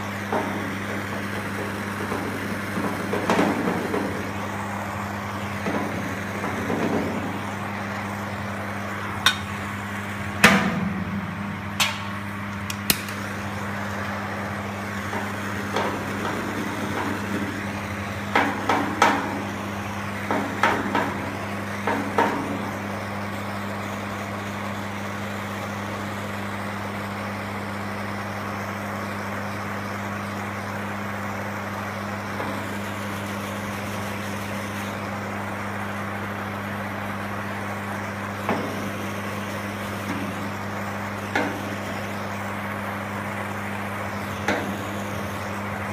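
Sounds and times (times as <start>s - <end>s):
steady hiss and hum: 0.0s - 45.9s.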